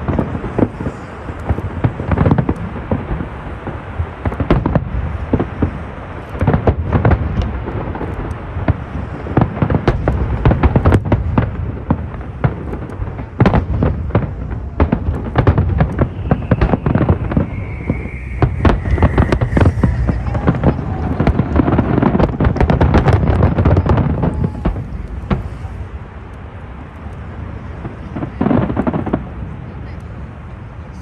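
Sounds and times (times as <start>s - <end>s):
low rumble of booms: 0.0s - 29.6s
fireworks shells bursting: 4.2s - 25.8s
high whistling tone: 15.9s - 21.5s.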